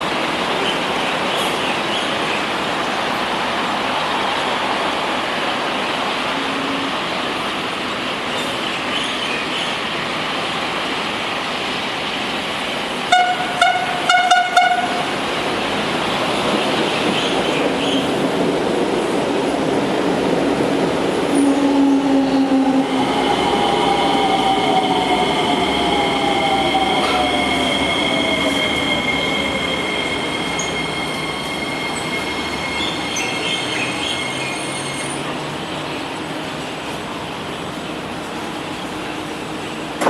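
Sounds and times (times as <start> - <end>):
train rolling noise: 0.0 - 40.0
train horn toots: 13.1 - 15.2, 21.3 - 22.8.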